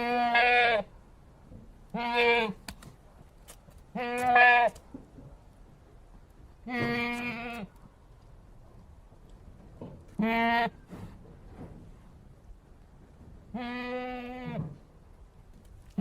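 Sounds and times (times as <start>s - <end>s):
goat bleating: 0.0s - 0.9s, 1.9s - 2.6s, 3.9s - 4.8s, 6.6s - 7.8s, 10.2s - 10.9s, 13.5s - 14.8s.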